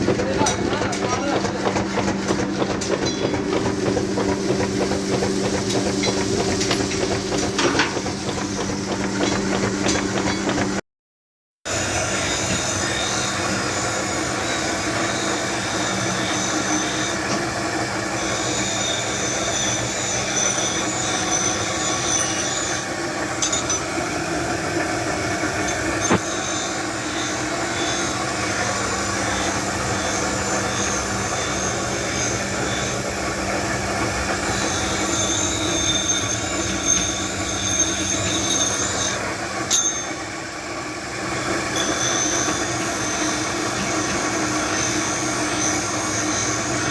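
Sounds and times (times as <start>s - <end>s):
high squeal: 11.8s - 23.8s, 24.9s - 40.4s, 41.4s - 46.9s
machinery hum: 19.0s - 39.0s.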